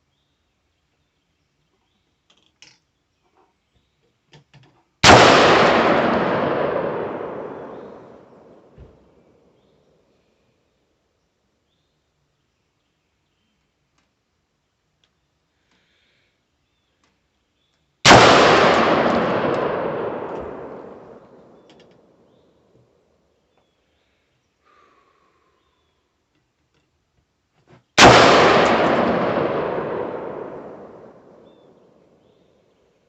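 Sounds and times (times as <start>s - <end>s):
pistol shots with echo: 5.0s - 8.8s, 18.1s - 21.7s, 28.0s - 32.0s.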